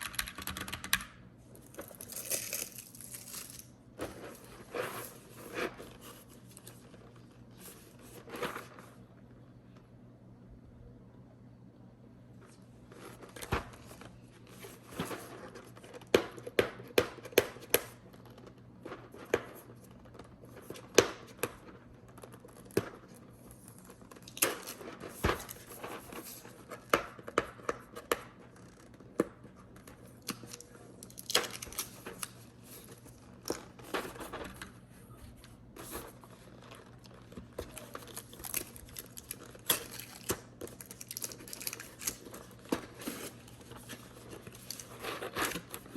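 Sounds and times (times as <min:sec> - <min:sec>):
wrapping crinkling and tearing: 0:01.6 - 0:08.8, 0:30.2 - 0:34.4, 0:35.8 - 0:45.9.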